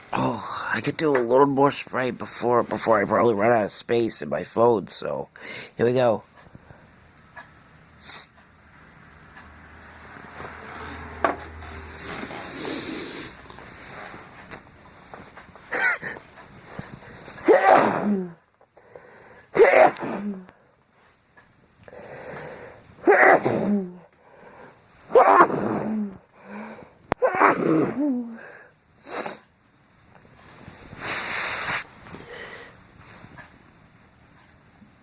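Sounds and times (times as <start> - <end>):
spray hiss: 8.0 - 8.3, 31.0 - 31.9
woman sneezing: 17.4 - 18.4, 19.6 - 20.5, 23.0 - 24.0.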